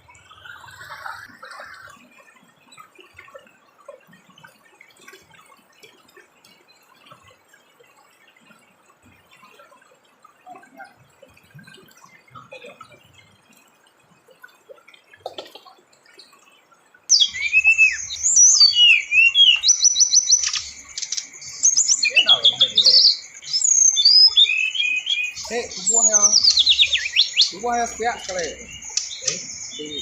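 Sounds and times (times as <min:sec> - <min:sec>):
bird song with trills: 0:17.1 - 0:30.0
faint scattered sounds: 0:17.8 - 0:30.0.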